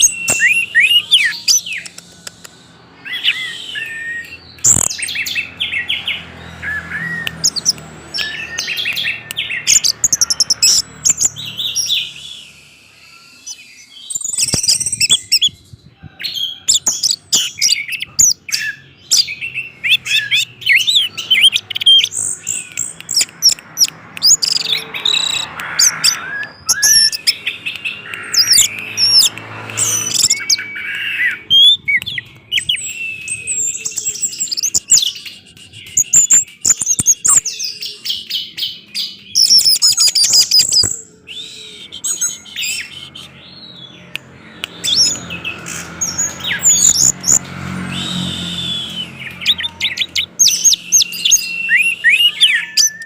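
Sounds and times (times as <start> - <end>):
thrush singing: 17.2 - 53.0.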